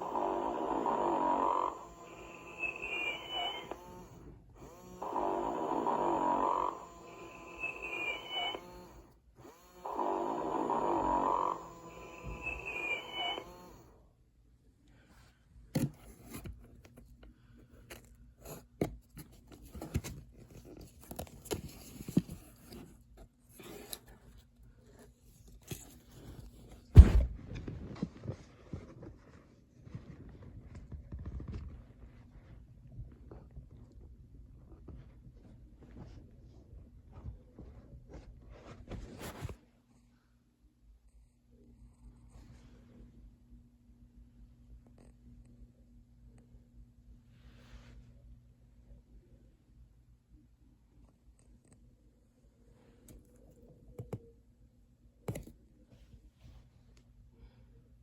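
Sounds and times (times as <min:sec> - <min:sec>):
toy playing recorded snoring: 0:00.0 - 0:14.0
rustling and scraping handling noise: 0:15.0 - 0:40.1
loud thump: 0:27.0 - 0:27.5.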